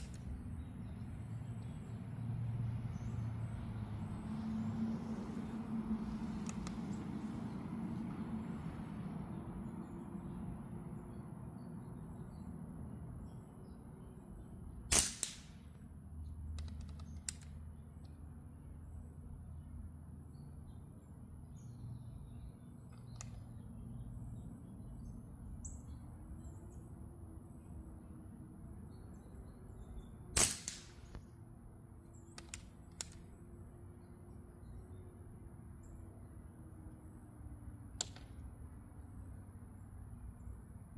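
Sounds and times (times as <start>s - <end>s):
air rifle shot: 14.9s - 15.6s, 30.4s - 31.2s.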